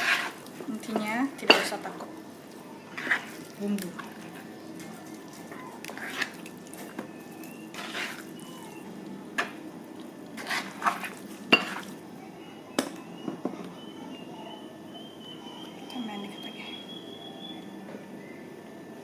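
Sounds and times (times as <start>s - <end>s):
utensil scraping a bowl: 0.0s - 0.4s, 2.9s - 3.5s, 7.7s - 8.4s, 10.4s - 11.9s.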